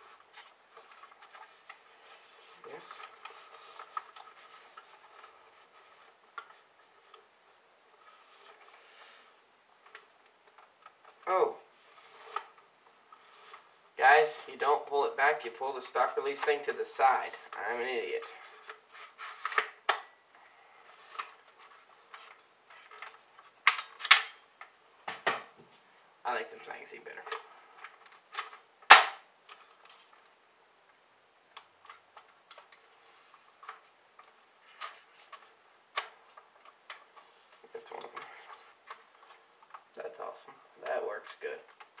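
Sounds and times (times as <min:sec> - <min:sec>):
plastic clicks and rubbing: 0:40.8 - 0:42.0.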